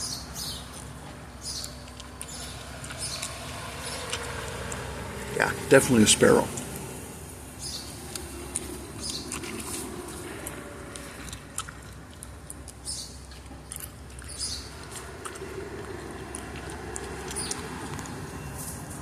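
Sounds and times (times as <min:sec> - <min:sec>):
sparrow chirping: 0:00.0 - 0:09.9, 0:12.8 - 0:13.3, 0:14.3 - 0:15.1, 0:15.9 - 0:18.8.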